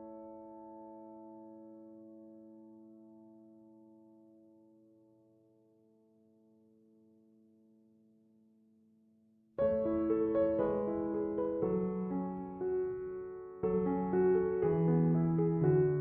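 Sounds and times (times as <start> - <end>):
piano melody with chords: 0.0 - 4.8, 9.6 - 16.0.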